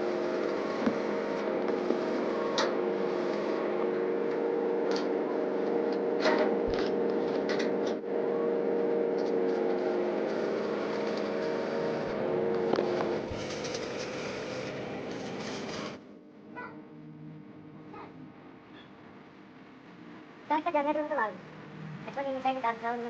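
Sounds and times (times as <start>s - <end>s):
motor humming: 0.0s - 16.0s.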